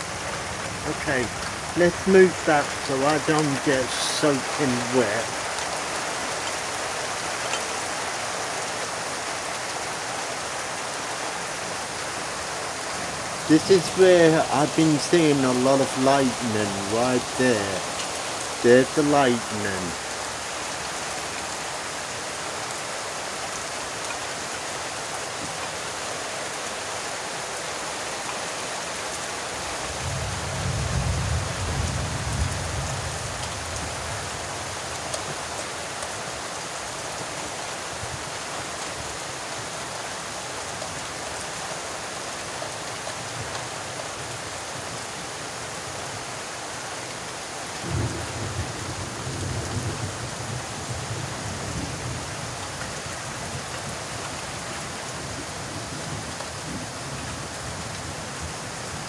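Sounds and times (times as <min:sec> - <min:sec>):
steady rain falling: 0:00.0 - 0:59.0
low rumble of thunder: 0:30.0 - 0:34.3, 0:47.8 - 0:52.3.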